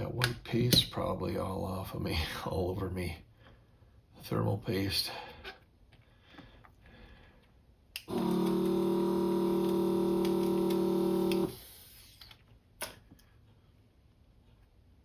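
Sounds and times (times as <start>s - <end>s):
desoldering vacuum pump humming: 7.9s - 12.0s.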